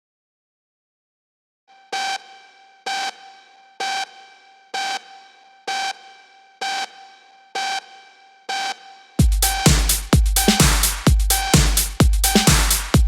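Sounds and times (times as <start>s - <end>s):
synthesizer stabs: 8.6s - 13.0s.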